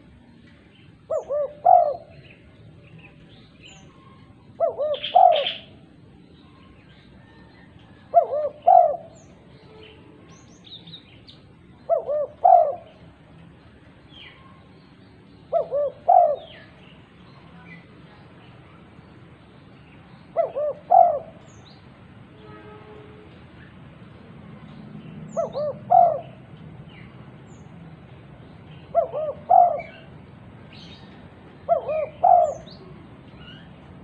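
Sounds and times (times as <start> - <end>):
faint higher bird chirps: 0.0 - 13.0
dove cooing: 1.1 - 2.2, 4.5 - 6.0, 7.2 - 9.3, 11.8 - 13.1, 15.5 - 16.8, 20.3 - 21.5, 25.3 - 26.5, 28.8 - 30.2, 31.6 - 33.7.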